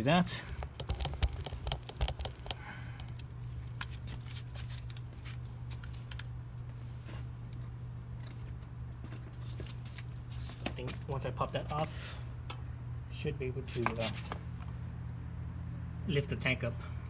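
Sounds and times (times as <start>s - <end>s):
low steady hum: 0.0s - 17.0s
screwdriver clicking on hose fitting: 0.6s - 12.7s.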